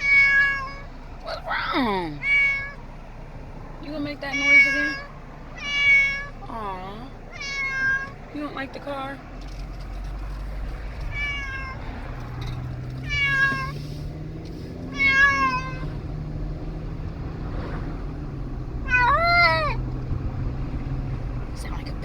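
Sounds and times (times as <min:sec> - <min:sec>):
cat meowing: 0:00.0 - 0:02.9, 0:04.2 - 0:06.5, 0:07.2 - 0:08.2, 0:11.0 - 0:12.2, 0:13.0 - 0:13.9, 0:14.8 - 0:16.0, 0:18.8 - 0:19.8
car droning: 0:00.0 - 0:22.0.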